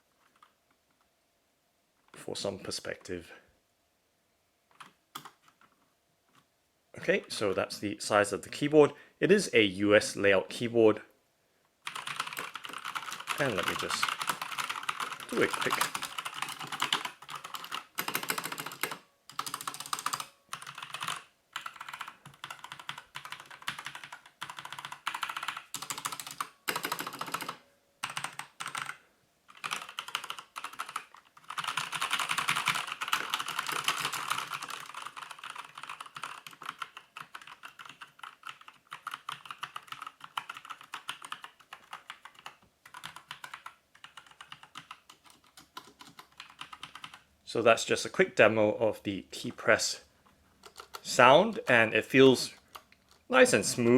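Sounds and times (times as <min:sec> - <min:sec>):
typing on mechanical keyboard: 0:04.8 - 0:05.7, 0:11.8 - 0:47.2, 0:50.6 - 0:51.0, 0:52.6 - 0:53.3.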